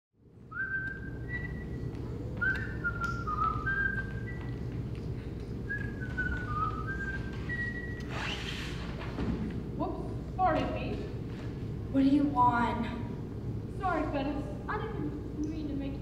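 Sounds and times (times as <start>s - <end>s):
person whistling a tune: 0.5s - 4.7s, 5.7s - 8.1s.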